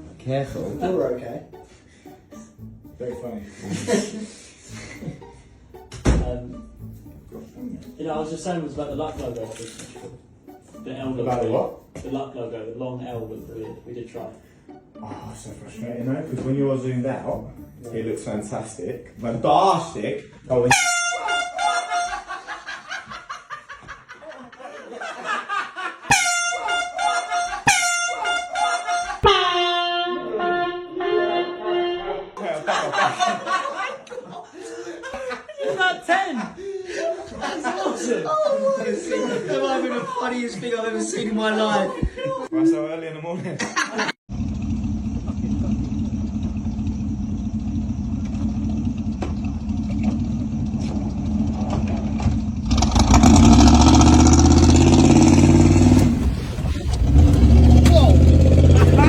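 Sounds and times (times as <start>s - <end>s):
compressed-air horn blasts: 20.6s - 22.3s, 26.1s - 32.3s
vehicle engine rumbling: 44.3s - 59.0s.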